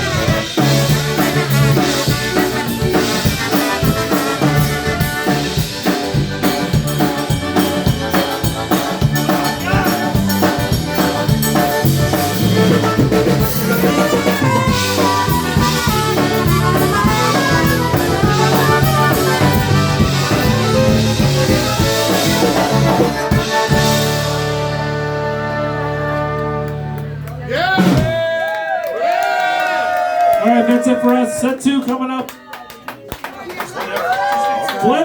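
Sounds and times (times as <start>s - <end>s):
brass horns: 0.0s - 7.7s, 9.5s - 28.2s
drum kit beat: 0.0s - 28.3s.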